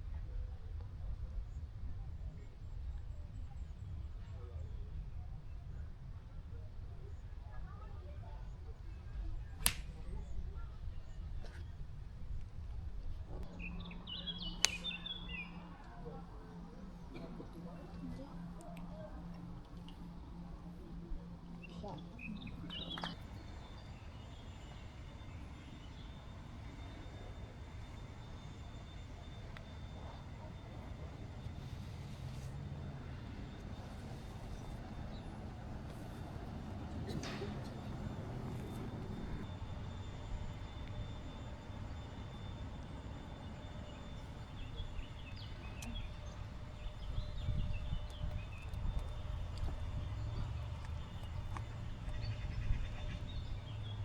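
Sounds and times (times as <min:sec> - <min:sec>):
low background rumble: 0:09.3 - 0:54.0
sharp click: 0:09.6 - 0:09.9
bird chirping and twittering: 0:13.5 - 0:15.7, 0:21.6 - 0:24.8.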